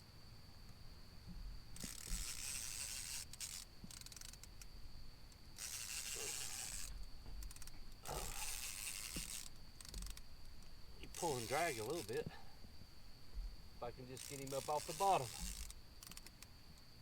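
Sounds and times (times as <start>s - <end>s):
fishing reel ratcheting: 1.8s - 4.7s, 5.6s - 12.2s, 14.1s - 16.5s.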